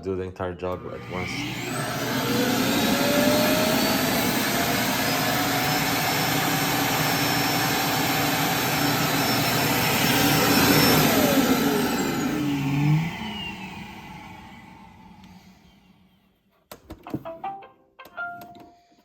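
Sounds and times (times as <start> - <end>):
suction motor whirring: 0.7 - 15.9.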